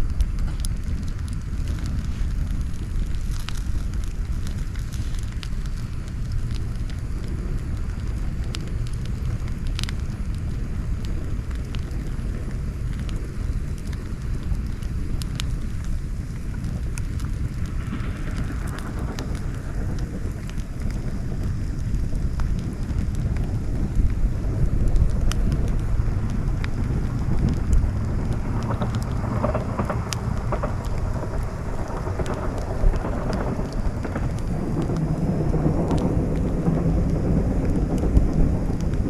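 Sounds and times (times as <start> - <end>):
campfire crackling and popping: 0.0 - 39.0
steady low rumble: 0.0 - 39.0.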